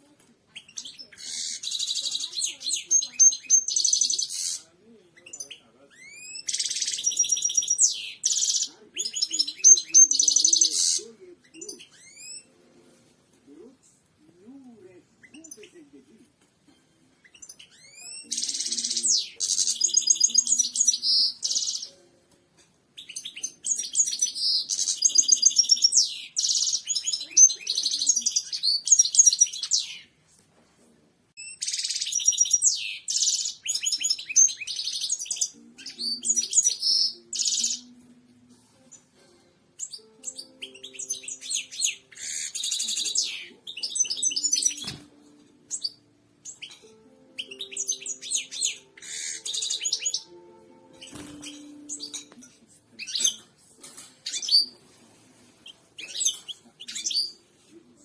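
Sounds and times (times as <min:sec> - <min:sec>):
goldfinch twittering song: 0:00.6 - 0:04.6, 0:05.3 - 0:11.0, 0:17.2 - 0:21.9, 0:23.0 - 0:30.0, 0:31.4 - 0:37.8, 0:39.8 - 0:45.0, 0:45.7 - 0:52.4.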